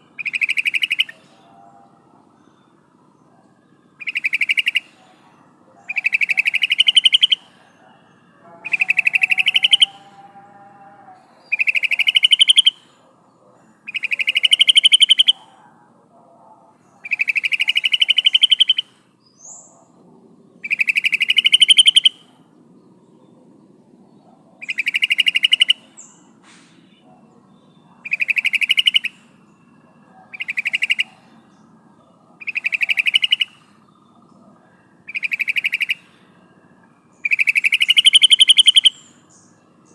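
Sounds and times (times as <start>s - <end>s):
faint background bird calls: 0.0s - 39.9s
bird bubbling rattle call: 8.6s - 10.0s, 28.0s - 29.1s, 35.1s - 36.0s.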